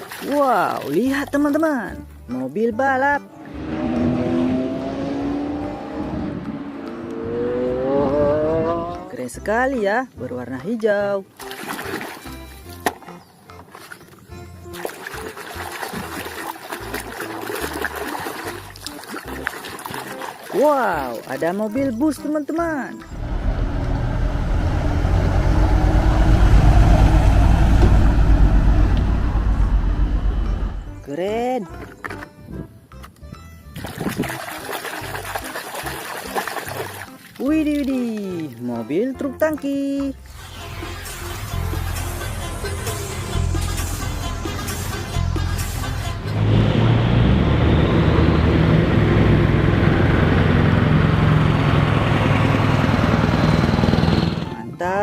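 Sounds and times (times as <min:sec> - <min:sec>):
bus engine pulsing rumble: 0:23.1 - 0:31.0, 0:41.4 - 0:54.5.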